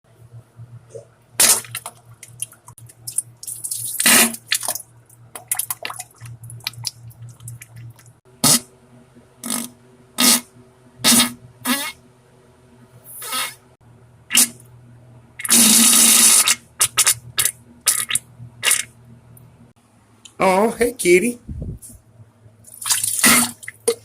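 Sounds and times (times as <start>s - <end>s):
wet spluttering farts: 1.4s - 2.0s, 3.1s - 4.8s, 8.4s - 8.6s, 9.4s - 10.4s, 11.0s - 12.0s, 13.2s - 13.6s, 14.3s - 14.6s, 15.4s - 18.9s, 22.8s - 24.0s.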